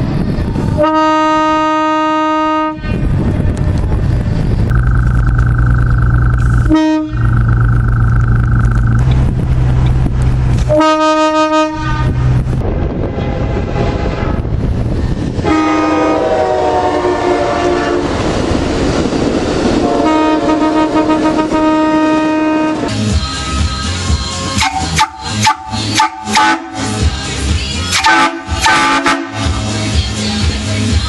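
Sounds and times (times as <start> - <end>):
air horn blasts: 0.8 - 3.0, 6.6 - 7.4, 10.6 - 12.3, 15.4 - 18.2, 19.8 - 22.9, 24.6 - 27.0, 27.9 - 29.6
low rumble: 2.5 - 23.2.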